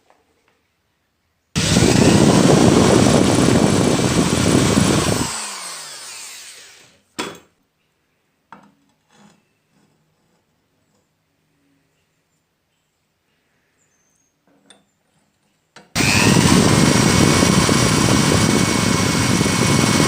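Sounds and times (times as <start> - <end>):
electric power tool motor: 1.6 - 7.0, 16.0 - 20.0.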